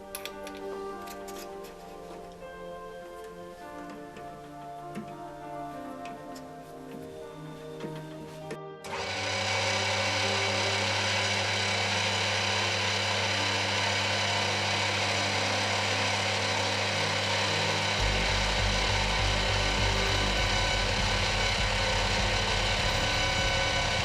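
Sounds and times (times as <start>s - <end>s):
electric machine tool humming: 8.8s - 24.0s
low pulsing note: 9.4s - 24.0s.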